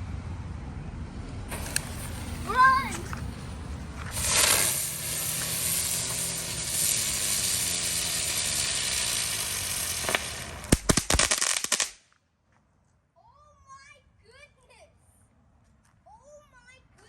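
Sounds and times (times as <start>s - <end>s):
ground fireworks hissing: 1.5s - 12.0s
firework sharp cracks: 1.5s - 12.2s.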